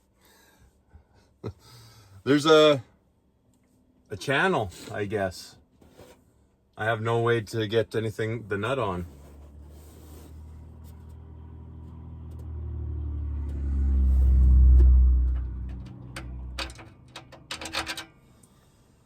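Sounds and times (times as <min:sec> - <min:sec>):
vehicle engine driving past: 0:09.1 - 0:17.2
sharp knocks and clatters: 0:15.4 - 0:18.2.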